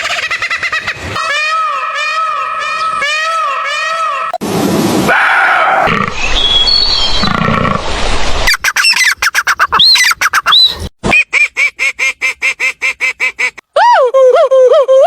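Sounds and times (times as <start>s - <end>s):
bird honking calls: 0.0s - 4.4s.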